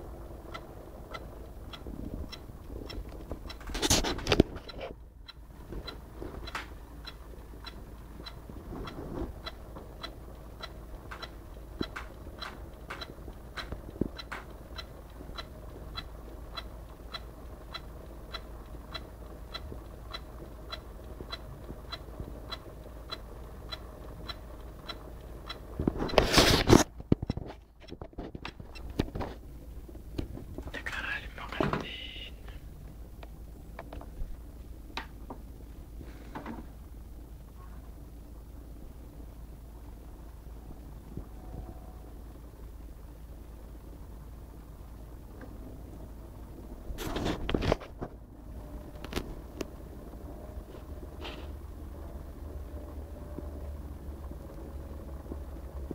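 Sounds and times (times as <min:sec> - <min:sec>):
crackling clicks: 0:00.0 - 0:35.9, 0:38.9 - 0:55.9
laptop low hum: 0:00.0 - 0:55.9
sharp clicks: 0:09.4 - 0:26.2.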